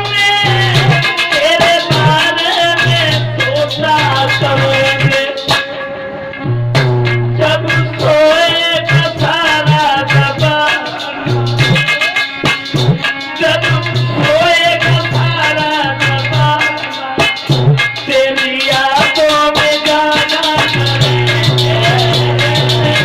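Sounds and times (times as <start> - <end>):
steady drum beat: 0.0 - 5.8, 6.5 - 23.0
bending melody line: 0.0 - 23.0.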